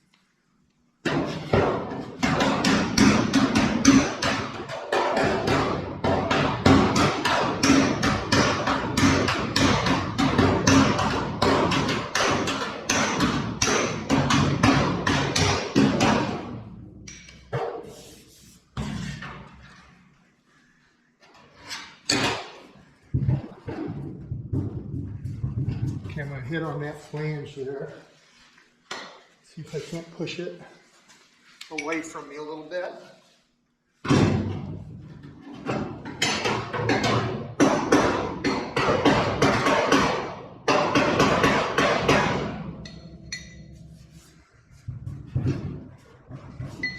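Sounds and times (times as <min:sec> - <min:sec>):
hammer striking steel panel: 0:01.0 - 0:17.9, 0:35.7 - 0:43.8.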